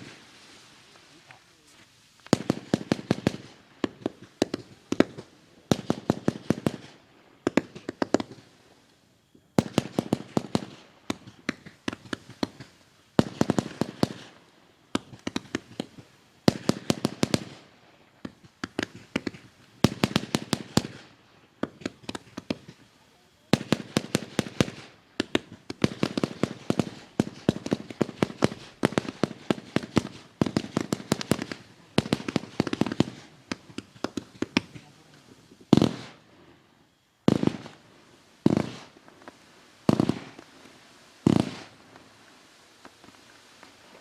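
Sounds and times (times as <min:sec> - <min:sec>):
firework cake firing rapid bangs: 0:02.3 - 0:08.4, 0:09.6 - 0:14.4, 0:15.0 - 0:36.2, 0:39.8 - 0:40.5, 0:41.2 - 0:41.8.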